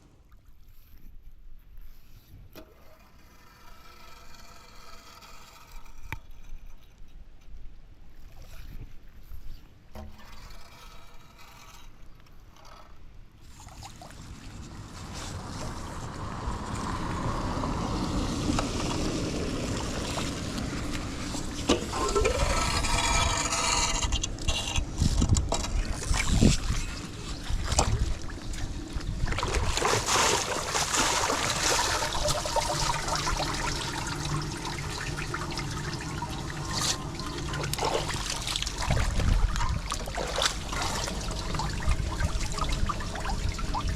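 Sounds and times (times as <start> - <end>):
water rushing into storm drain: 13.7 - 24.0, 25.4 - 43.9.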